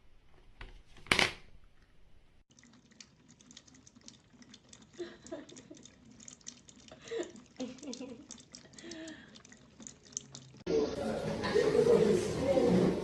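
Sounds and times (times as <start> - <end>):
faint clicking and tapping: 2.5 - 10.7.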